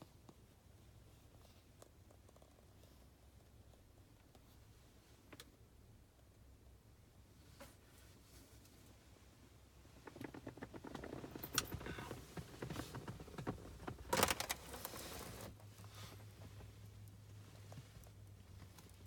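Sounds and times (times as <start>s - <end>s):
rustling handling noises: 10.0s - 19.0s.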